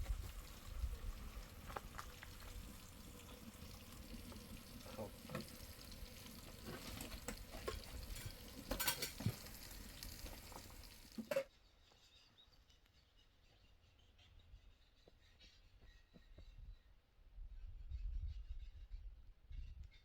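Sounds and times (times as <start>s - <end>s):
food sizzling in a pan: 0.0s - 11.5s.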